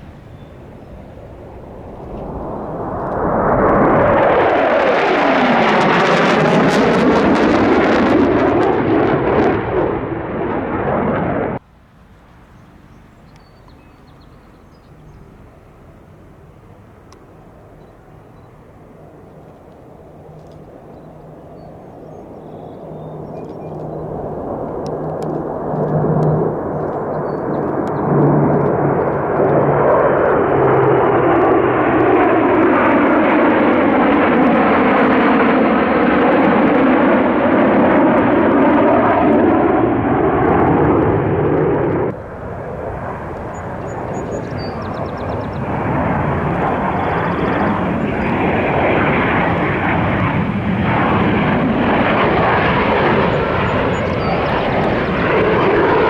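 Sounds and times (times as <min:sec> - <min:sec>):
airplane engines passing: 0:00.0 - 0:56.0.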